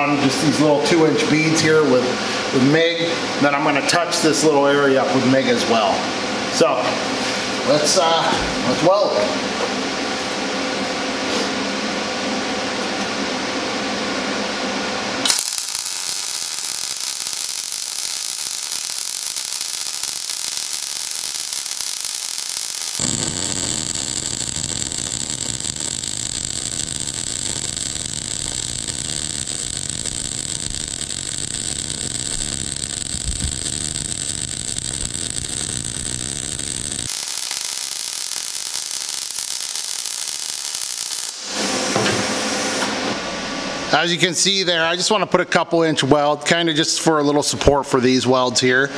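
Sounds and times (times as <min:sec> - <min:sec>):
welder arc hissing: 0:15.2 - 0:43.1.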